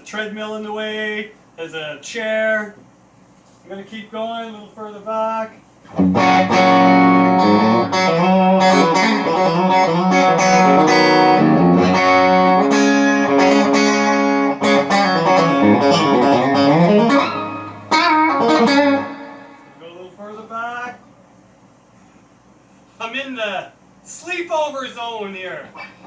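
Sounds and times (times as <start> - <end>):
electric guitar through amplifier: 5.9 - 19.8.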